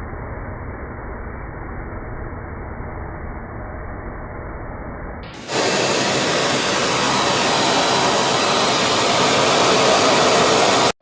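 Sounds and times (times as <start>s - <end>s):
vacuum cleaner running: 5.3s - 11.0s.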